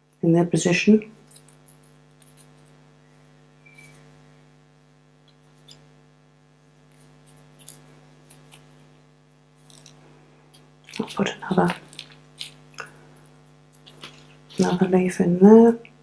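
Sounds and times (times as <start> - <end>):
low electrical hum: 0.0 - 16.0
hands rustling wire stems: 6.8 - 15.2.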